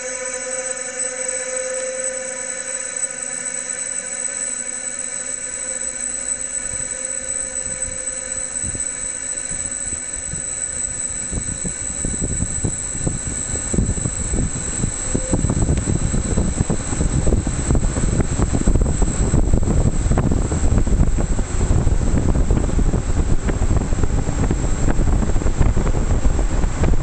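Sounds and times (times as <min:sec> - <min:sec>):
fan humming with high whine: 0:00.0 - 0:27.0
wind buffeting microphone: 0:11.2 - 0:27.0.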